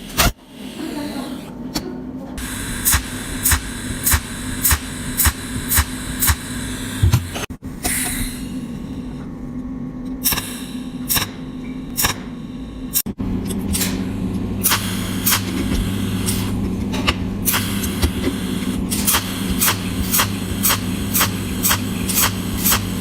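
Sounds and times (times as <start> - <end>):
welding machine humming: 2.4 - 7.6, 10.2 - 23.0.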